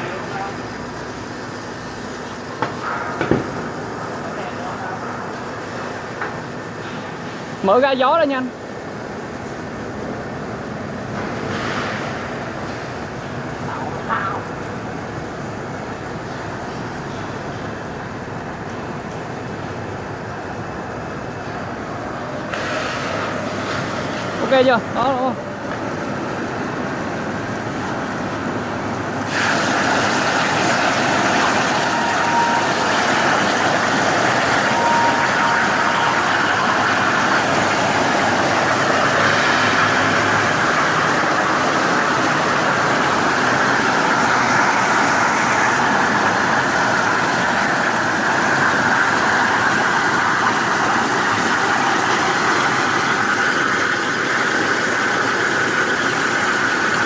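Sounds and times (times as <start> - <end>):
cutting torches hissing: 22.2 - 47.7.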